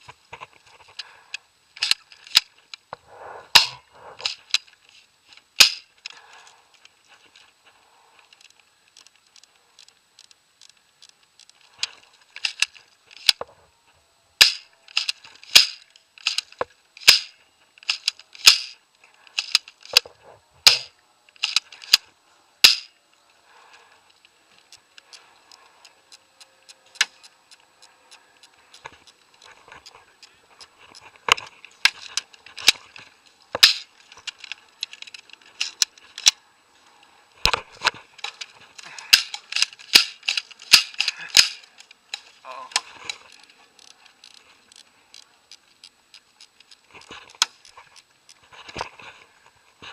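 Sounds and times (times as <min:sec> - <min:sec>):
faint clicks and rattles: 0:00.0 - 0:13.6, 0:14.5 - 0:22.1, 0:23.1 - 0:49.9
airsoft gun shots: 0:14.4 - 0:14.7, 0:20.7 - 0:20.9, 0:22.6 - 0:22.9.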